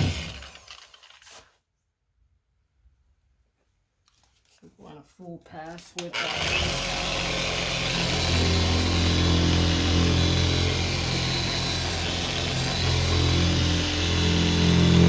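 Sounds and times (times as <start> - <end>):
electric polisher running: 0.0 - 1.0, 6.1 - 15.0.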